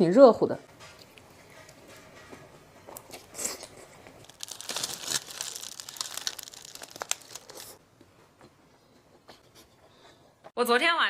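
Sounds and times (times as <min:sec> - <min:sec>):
plastic packaging crinkling: 0:04.2 - 0:07.8.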